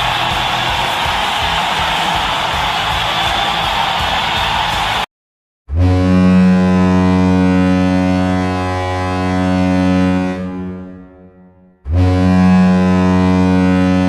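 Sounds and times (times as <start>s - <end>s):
low-pitched goal horn blast: 5.7s - 14.0s.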